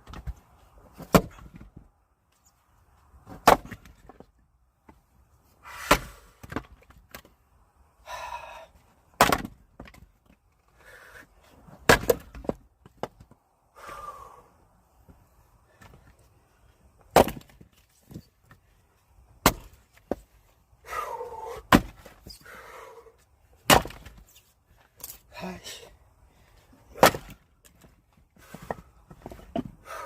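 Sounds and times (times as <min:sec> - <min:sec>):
axe chopping firewood: 0:01.0 - 0:01.8, 0:03.2 - 0:04.2, 0:05.7 - 0:07.2, 0:09.1 - 0:10.0, 0:11.7 - 0:13.4, 0:17.0 - 0:18.2, 0:19.4 - 0:20.3, 0:21.3 - 0:22.3, 0:23.6 - 0:24.3, 0:26.9 - 0:30.0.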